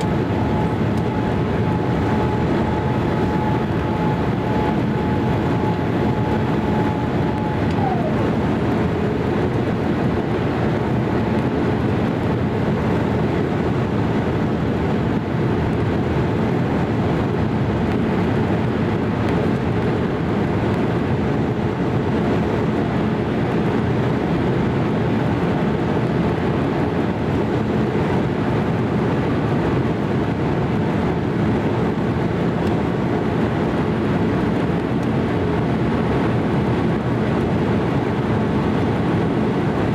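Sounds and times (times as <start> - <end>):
faint whine: 0.0 - 14.2
airliner cabin noise: 0.0 - 39.9.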